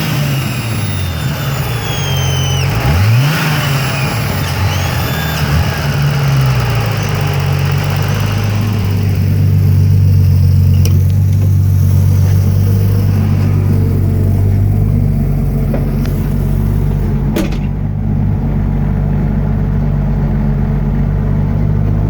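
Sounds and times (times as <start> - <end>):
high-pitched engine whistle: 0.0 - 16.8
car engine revving and idling: 0.0 - 22.0.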